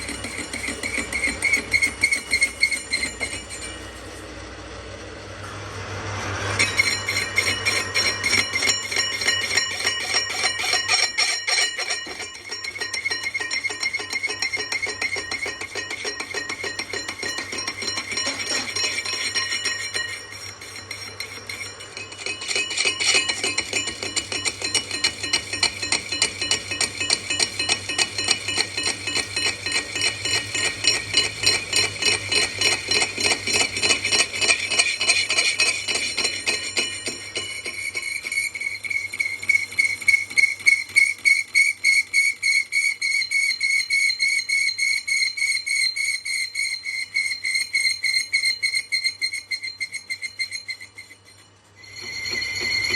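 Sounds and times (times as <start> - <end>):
metal struck with ringing tone: 6.6 - 38.0, 51.8 - 52.9.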